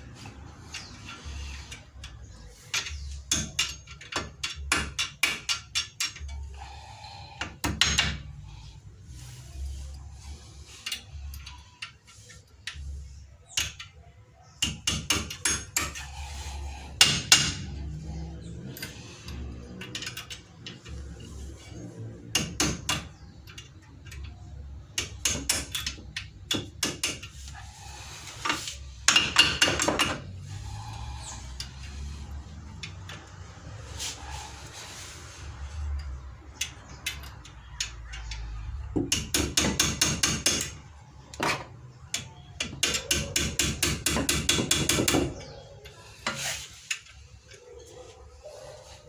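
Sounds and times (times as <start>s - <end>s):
metallic taps on brake parts: 35.9s - 45.6s.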